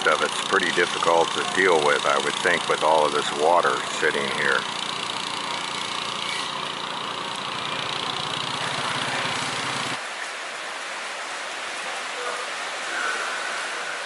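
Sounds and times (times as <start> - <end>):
engine pulsing rumble: 0.0 - 10.0.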